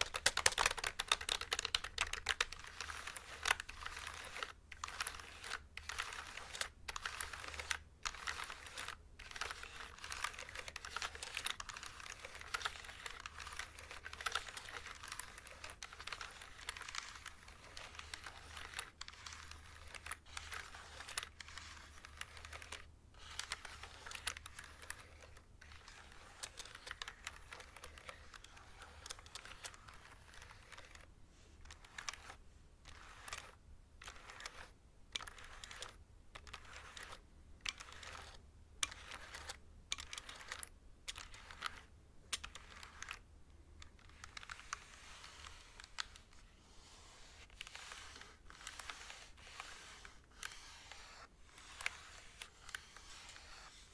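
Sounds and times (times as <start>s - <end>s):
mechanical keyboard typing: 0.0s - 31.1s, 31.7s - 43.2s.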